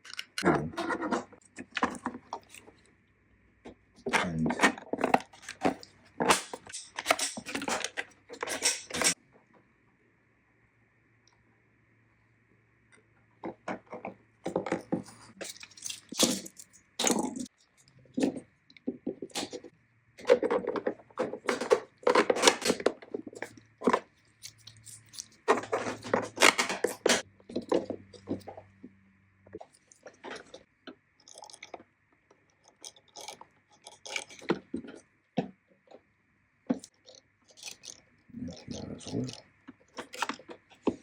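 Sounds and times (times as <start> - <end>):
plastic parts clicking and scraping: 0.0 - 2.9, 4.0 - 9.2, 13.4 - 28.8, 29.5 - 31.9, 32.6 - 36.0, 38.6 - 41.0
faint steady hum: 0.0 - 41.0.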